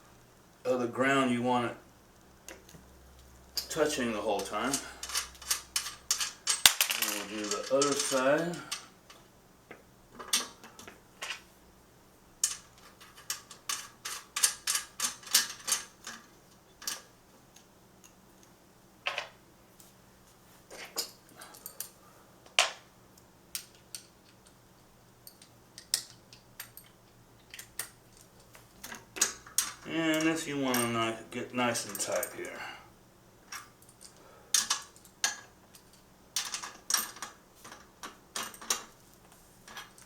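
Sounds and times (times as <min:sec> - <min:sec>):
metal hardware clicking and clinking: 0:03.5 - 0:09.2, 0:12.4 - 0:18.2, 0:25.2 - 0:31.1, 0:31.8 - 0:32.6, 0:33.5 - 0:39.0, 0:39.7 - 0:40.0.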